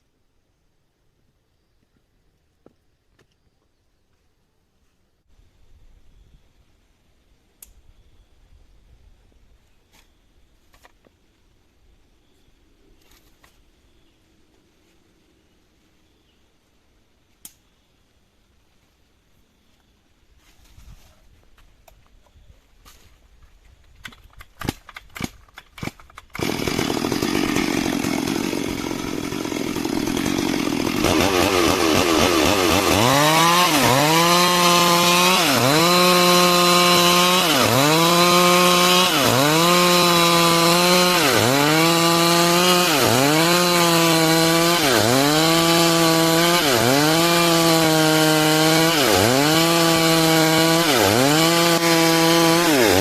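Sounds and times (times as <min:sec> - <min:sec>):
chainsaw cutting wood: 0:24.0 - 0:53.0.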